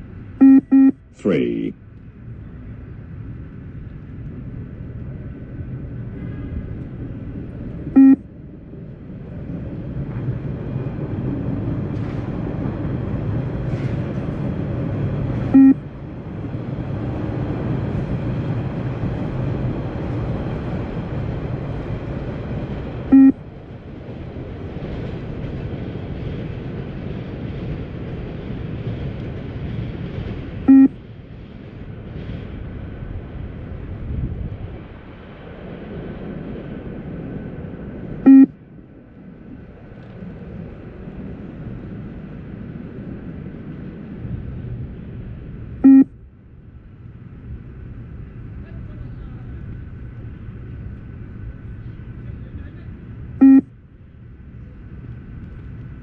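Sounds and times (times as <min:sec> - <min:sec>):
steady low rumbling noise: 0:00.0 - 0:56.0
short beeps: 0:00.4 - 0:01.0, 0:08.0 - 0:08.2, 0:15.6 - 0:15.8, 0:23.1 - 0:23.4, 0:30.7 - 0:31.0, 0:38.3 - 0:38.5, 0:45.8 - 0:46.1, 0:53.4 - 0:53.7.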